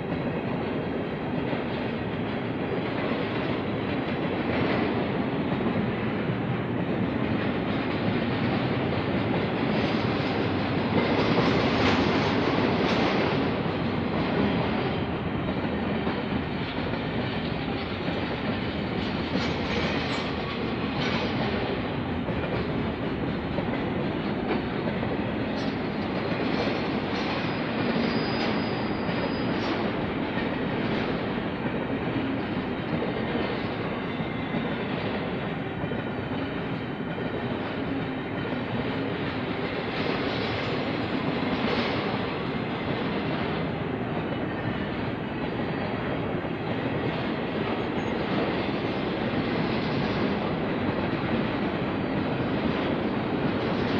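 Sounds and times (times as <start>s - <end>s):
freight train rumbling past: 0.0s - 53.9s
faint high wheel squeal: 27.5s - 29.9s.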